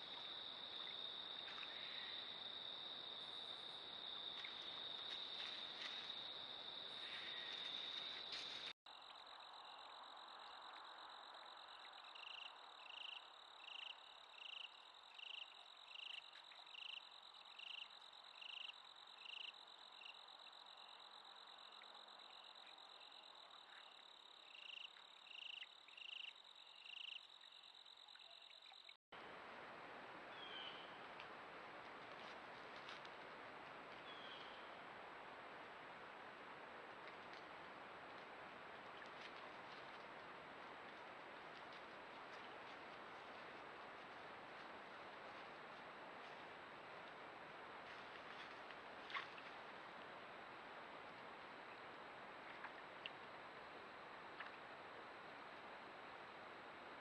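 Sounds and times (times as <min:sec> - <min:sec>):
insects trilling: 0:00.0 - 0:28.9.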